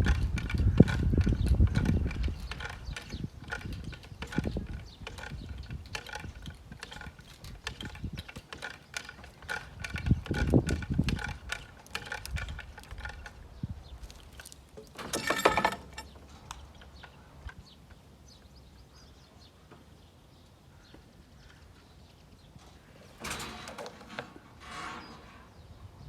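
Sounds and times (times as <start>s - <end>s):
hand winch ratchet clicking: 0.0s - 13.3s.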